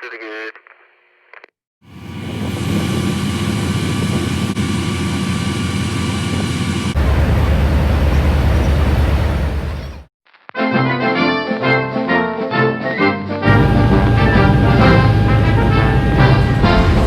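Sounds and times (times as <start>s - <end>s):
aircraft engine running: 1.9s - 10.1s, 13.5s - 17.0s
deep engine rumble: 1.9s - 10.1s, 13.5s - 17.0s
high engine whine: 1.9s - 10.1s, 13.5s - 17.0s.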